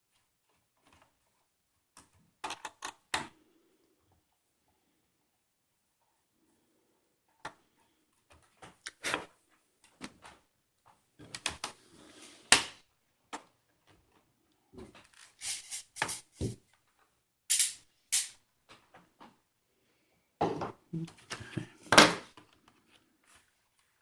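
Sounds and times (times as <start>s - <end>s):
plastic parts clicking and tapping: 1.9s - 3.3s, 11.2s - 11.8s.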